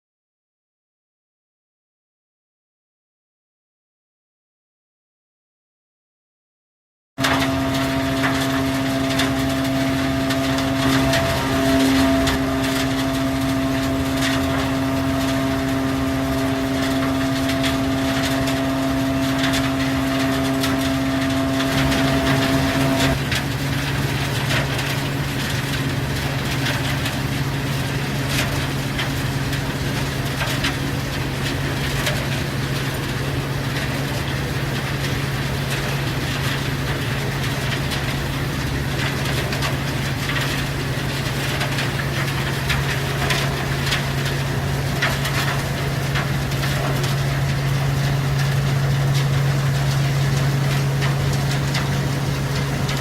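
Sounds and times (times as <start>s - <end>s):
screening machine humming: 7.2s - 35.7s, 39.3s - 53.0s.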